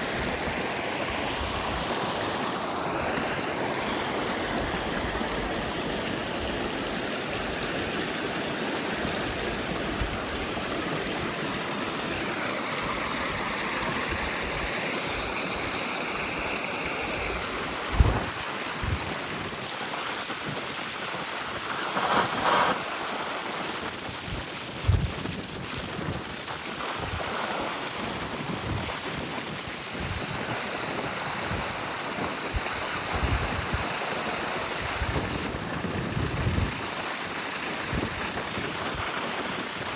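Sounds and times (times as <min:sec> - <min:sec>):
rainwater rushing: 0:00.0 - 0:24.6.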